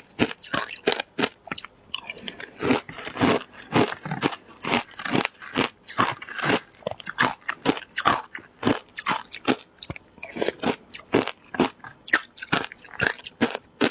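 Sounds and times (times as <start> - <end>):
crunching and chewing shaved ice: 0.0 - 13.9.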